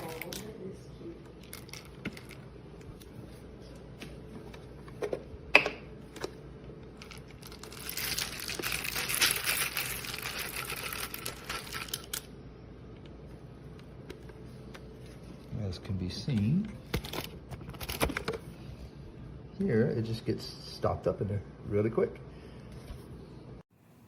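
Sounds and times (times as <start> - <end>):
coffee beans rattling out: 7.0 - 12.3.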